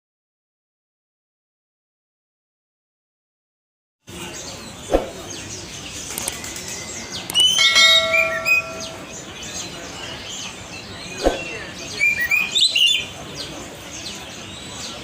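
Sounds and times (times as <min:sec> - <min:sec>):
caged songbirds chirping: 0:04.1 - 0:15.0.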